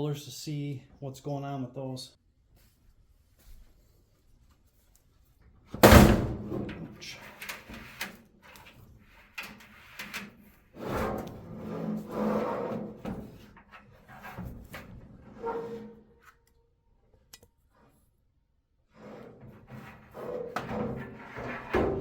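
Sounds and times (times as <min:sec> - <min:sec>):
loud metal clunk: 0:05.8 - 0:06.8
metal knocking and scraping: 0:19.2 - 0:22.0.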